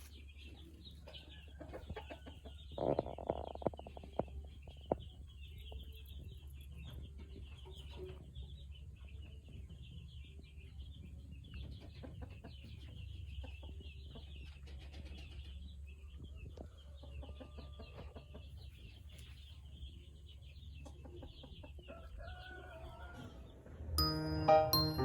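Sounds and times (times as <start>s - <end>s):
poultry chattering and clucking: 0.0s - 23.7s
chiming piano-like jingle: 24.0s - 25.0s.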